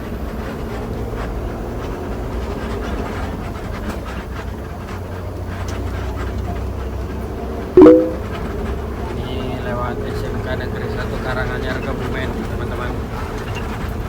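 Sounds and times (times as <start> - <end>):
bus engine and road rumble: 0.0 - 7.6, 9.1 - 14.0.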